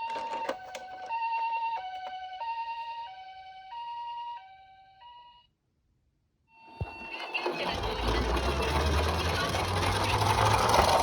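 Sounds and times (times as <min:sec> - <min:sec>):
toy two-tone siren: 0:00.0 - 0:05.5.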